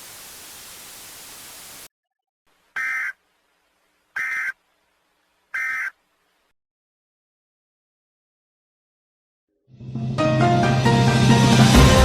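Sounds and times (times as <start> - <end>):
static hiss: 0.0 - 1.9.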